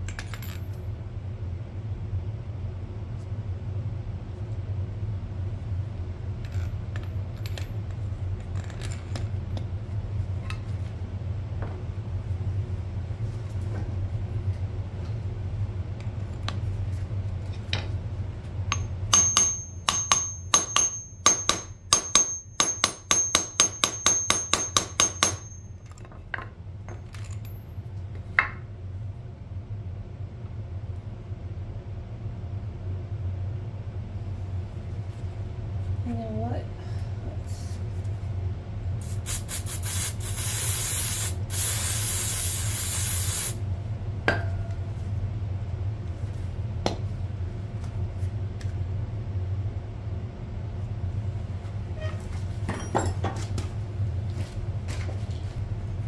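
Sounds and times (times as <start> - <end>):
steady low hum: 0.0 - 56.0
thin high metallic ring: 18.7 - 26.0
metal tools clinking on parts: 52.7 - 53.4.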